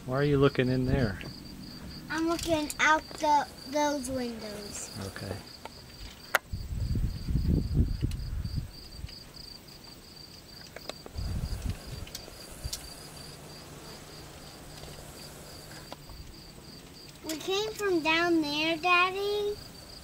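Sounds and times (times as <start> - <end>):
insects chirping: 0.0 - 20.0
low rumble bursts: 11.2 - 15.9.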